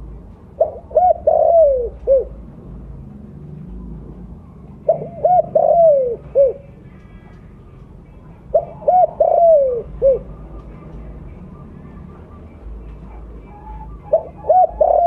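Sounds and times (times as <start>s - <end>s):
dove cooing: 0.6s - 2.5s, 4.8s - 6.8s, 8.4s - 15.0s.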